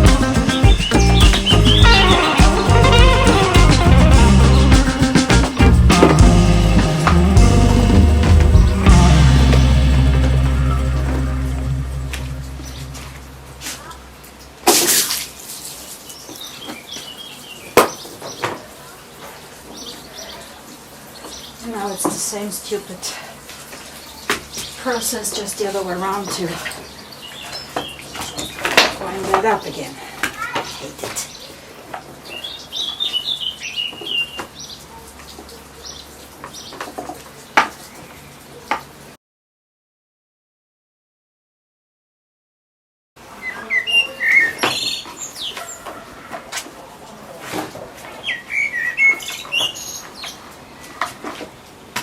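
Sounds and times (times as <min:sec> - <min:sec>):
bird chirping: 0:00.0 - 0:03.8, 0:43.4 - 0:45.8.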